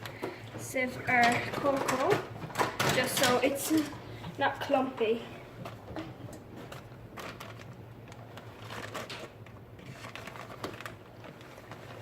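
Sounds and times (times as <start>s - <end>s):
kitchen utensils clicking and scraping: 0.0s - 4.6s.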